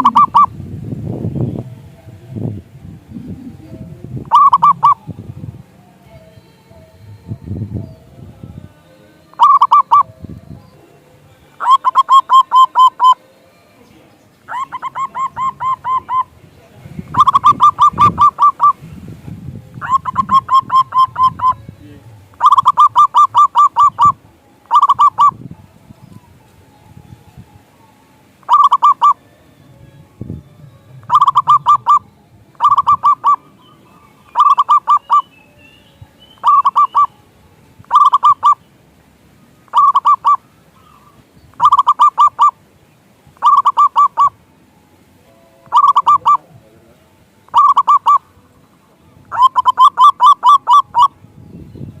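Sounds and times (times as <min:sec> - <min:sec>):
dove rolling coo calls: 0:00.0 - 0:07.9, 0:09.3 - 0:10.8, 0:11.5 - 0:13.3, 0:14.4 - 0:18.9, 0:19.7 - 0:26.5, 0:28.4 - 0:29.3, 0:30.5 - 0:44.4, 0:45.4 - 0:52.0.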